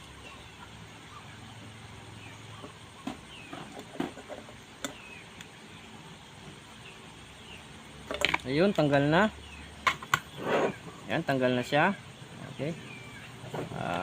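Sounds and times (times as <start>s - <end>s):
faint bird chirps: 0.0s - 3.8s, 8.8s - 14.0s.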